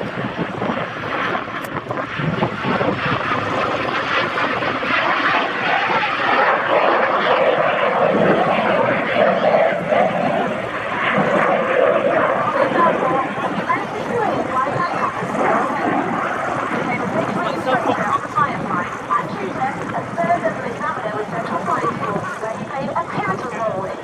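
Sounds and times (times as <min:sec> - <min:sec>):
propeller aircraft flying by: 0:00.0 - 0:24.0.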